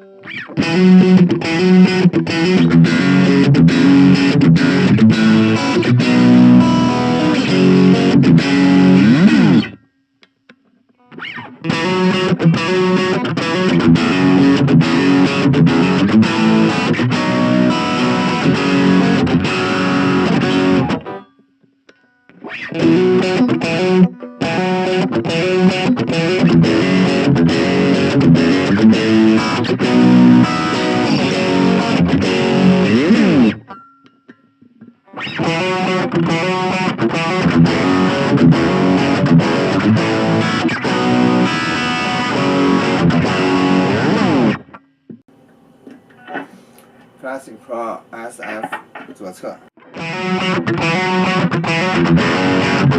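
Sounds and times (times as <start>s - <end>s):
distorted electric guitar: 0.0s - 47.0s, 48.5s - 52.9s.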